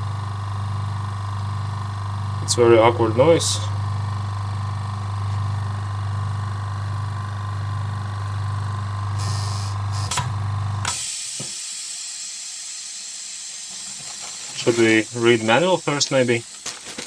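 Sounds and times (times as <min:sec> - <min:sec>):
air compressor humming: 0:00.0 - 0:17.0
click: 0:10.0 - 0:11.5.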